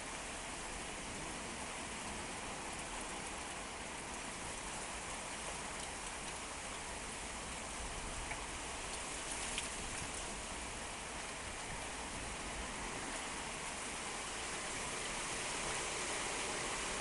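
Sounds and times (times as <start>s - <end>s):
rain falling: 0.0s - 17.0s
sharp raindrop ticks: 2.0s - 10.6s.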